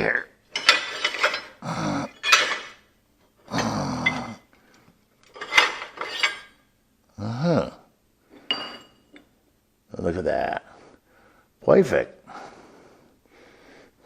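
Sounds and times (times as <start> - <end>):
scrap steel clanking and scraping: 0.5 - 2.8, 5.3 - 6.6
person grunting: 1.6 - 2.2, 3.5 - 4.4, 7.2 - 7.8.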